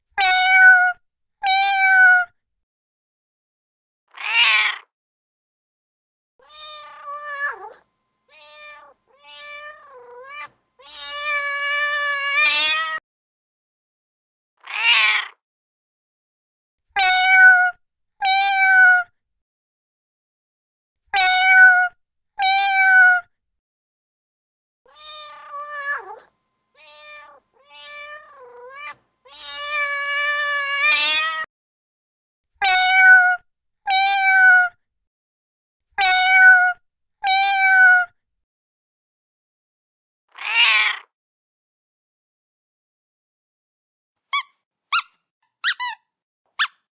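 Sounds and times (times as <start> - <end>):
kitten meowing: 0.2 - 2.3, 4.2 - 4.8, 14.7 - 15.3, 17.0 - 19.1, 21.2 - 23.3, 32.6 - 34.8, 36.0 - 38.1.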